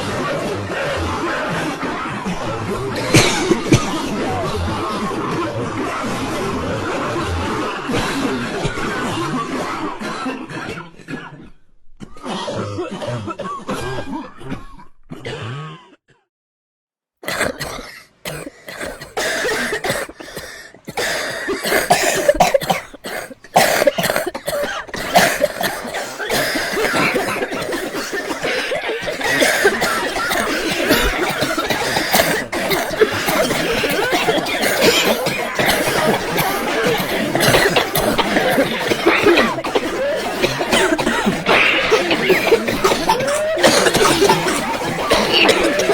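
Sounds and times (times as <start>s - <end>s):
many people coughing: 0.8s - 10.8s, 17.2s - 45.9s.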